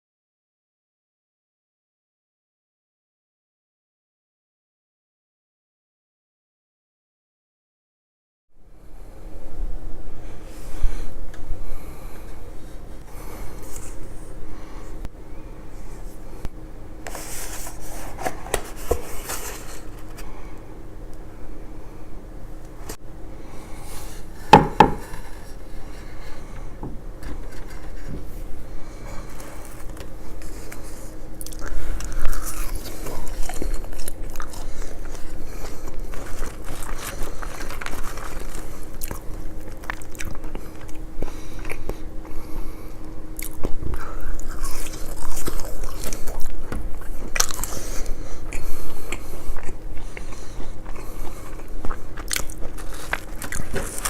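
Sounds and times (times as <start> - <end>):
person chewing crunchy food: 23.5 - 54.0.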